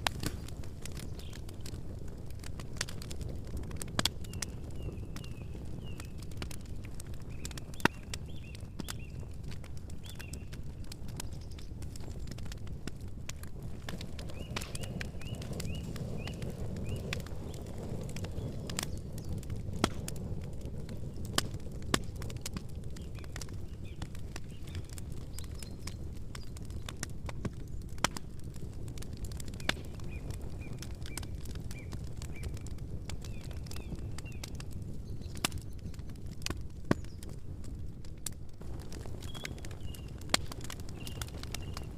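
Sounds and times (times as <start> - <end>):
campfire crackling and popping: 0.0 - 41.9.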